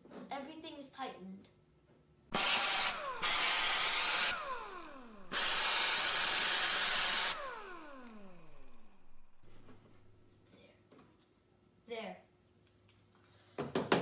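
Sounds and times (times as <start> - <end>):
cordless power driver whining: 2.3 - 9.5.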